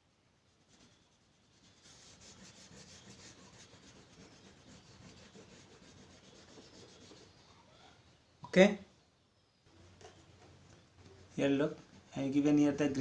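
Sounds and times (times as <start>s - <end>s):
crayon rubbing on paper: 0.7s - 7.5s.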